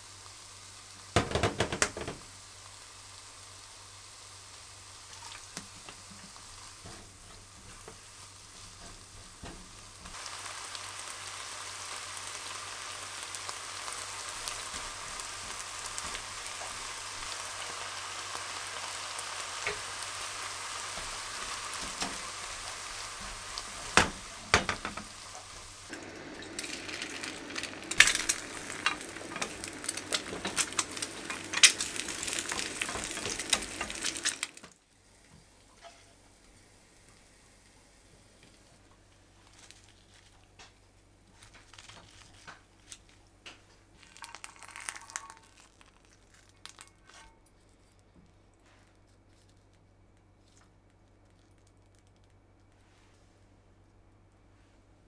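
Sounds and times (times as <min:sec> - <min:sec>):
food sizzling in a frying pan: 0:00.0 - 0:38.8, 0:43.8 - 0:47.3
sharp knocks and clatters: 0:23.9 - 0:25.1.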